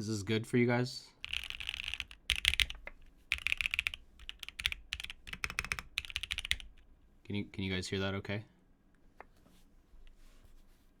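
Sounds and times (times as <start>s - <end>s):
mechanical keyboard typing: 1.2s - 6.8s.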